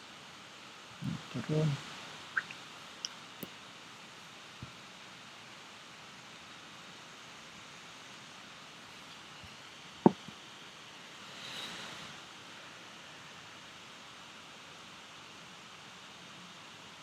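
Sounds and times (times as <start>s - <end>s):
steady hiss: 0.0s - 17.0s
soft rush: 11.1s - 12.8s.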